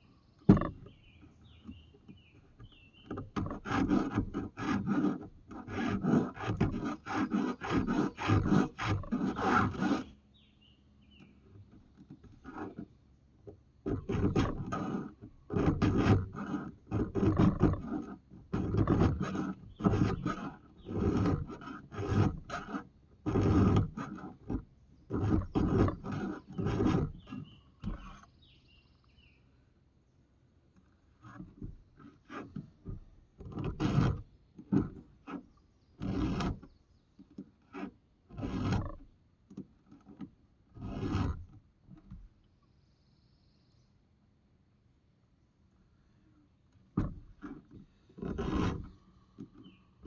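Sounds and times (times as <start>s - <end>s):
file rasping on chainsaw chain: 3.3s - 10.1s, 13.9s - 28.2s, 33.4s - 35.4s, 36.0s - 36.6s, 37.7s - 39.0s, 40.8s - 41.4s, 47.4s - 48.9s.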